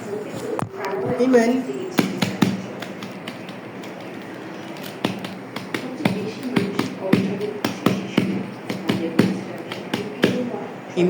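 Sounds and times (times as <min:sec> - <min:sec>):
plastic toys tapping and clicking: 0:01.9 - 0:10.5.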